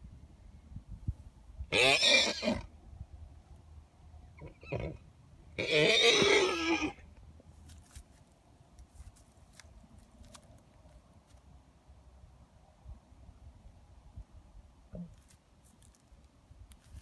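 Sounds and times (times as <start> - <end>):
horse calls: 1.7 - 2.7, 5.6 - 7.0.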